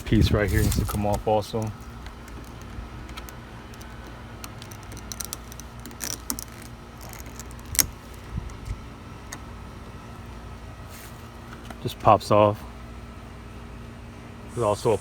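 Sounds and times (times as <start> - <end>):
screwdriver clicking and scraping plastic: 0.7 - 8.7.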